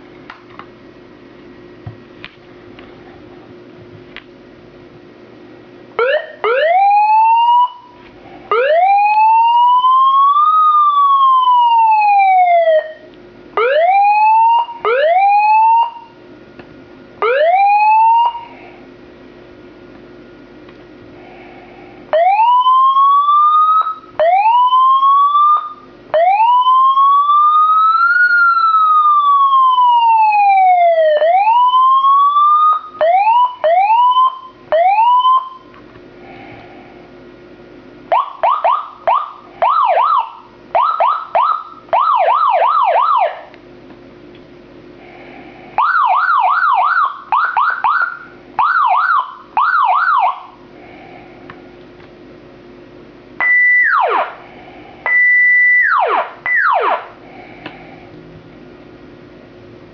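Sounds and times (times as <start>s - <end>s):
electronic police siren: 6.0s - 16.2s, 17.2s - 18.5s, 22.1s - 35.7s, 38.1s - 43.5s, 45.8s - 50.6s, 53.4s - 54.4s, 55.0s - 57.2s.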